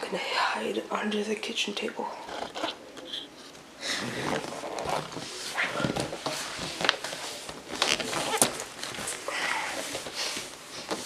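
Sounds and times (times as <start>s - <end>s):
scuffling and rustling: 4.0s - 11.0s.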